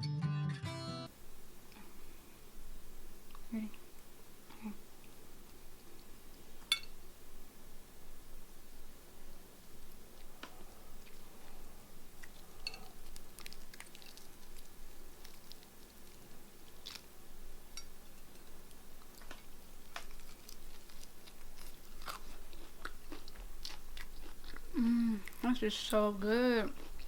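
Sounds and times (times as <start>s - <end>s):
person chewing crispy chicken: 9.8s - 17.1s, 18.1s - 25.4s, 26.7s - 27.0s.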